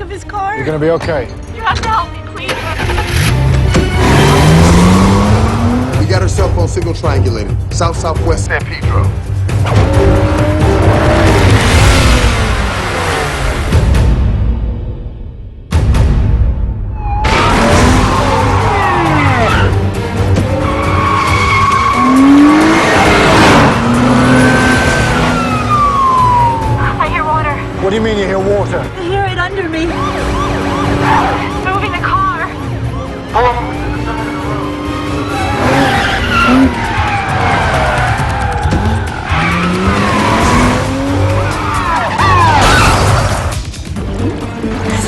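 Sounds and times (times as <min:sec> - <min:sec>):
dramatic film score music: 0:00.0 - 0:45.0
car engine revving: 0:02.4 - 0:08.4, 0:09.1 - 0:14.2, 0:17.2 - 0:44.0
tyres squealing and skidding: 0:02.6 - 0:06.0, 0:16.9 - 0:27.6, 0:29.8 - 0:43.6.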